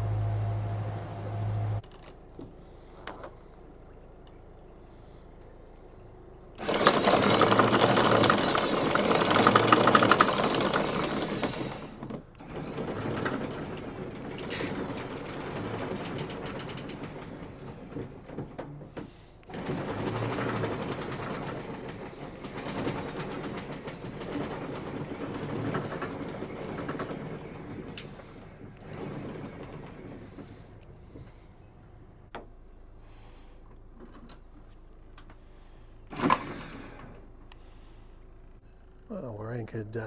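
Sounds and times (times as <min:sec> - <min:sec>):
anchor chain rattling: 0:06.6 - 0:18.9
anchor windlass running: 0:06.6 - 0:38.9.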